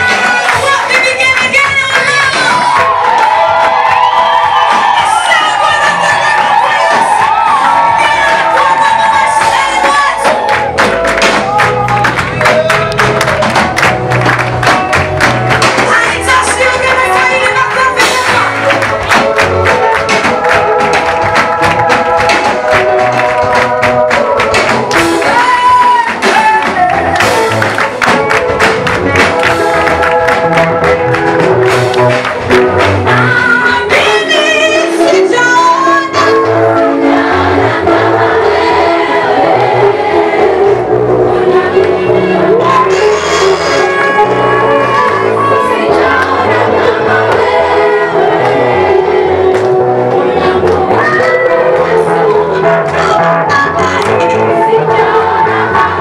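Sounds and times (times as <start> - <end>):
bass: 0.0 - 56.0
steady drum beat: 0.0 - 56.0
worship team singing: 34.8 - 56.0.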